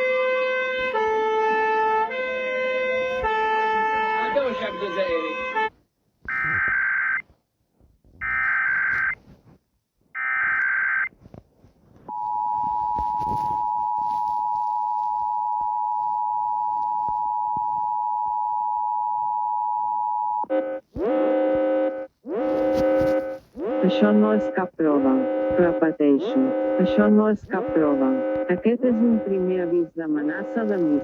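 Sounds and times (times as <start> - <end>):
two-tone attention signal: 12.1 - 20.5.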